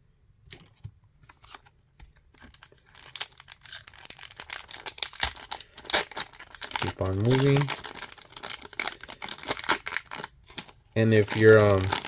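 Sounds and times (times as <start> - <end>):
wrapper crinkling and tearing: 2.4 - 12.0.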